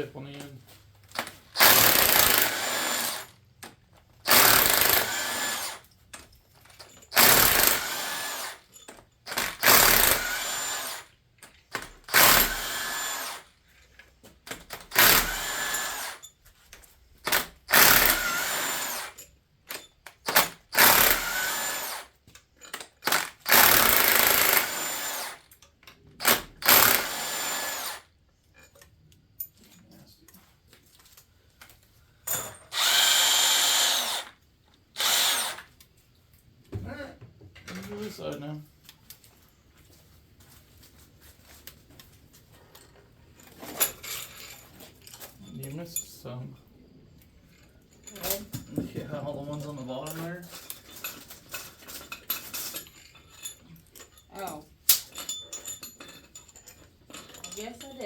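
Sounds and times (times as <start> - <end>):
cordless power driver spinning: 32.7 - 34.3, 35.0 - 35.6.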